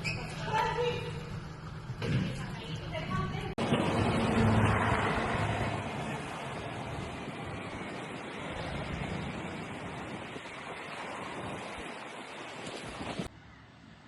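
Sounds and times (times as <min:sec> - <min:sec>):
wind roaring: 0:00.0 - 0:13.4
rushing water: 0:03.6 - 0:13.3.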